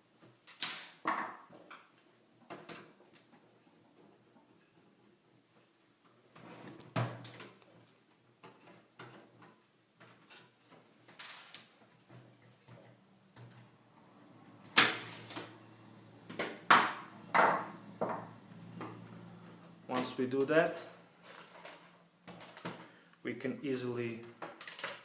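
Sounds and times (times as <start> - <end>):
plastic and metal parts clicking: 24.4 - 25.0.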